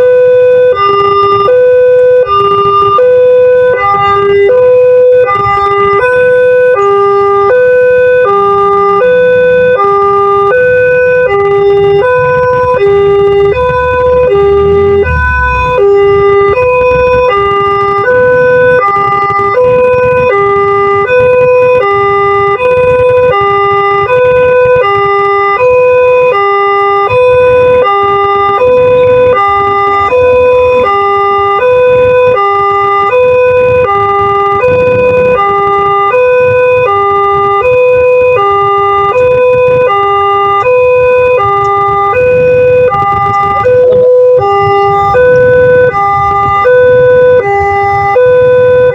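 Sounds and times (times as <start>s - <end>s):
two-note warning siren: 0.0s - 48.9s
low rumble: 2.2s - 37.6s.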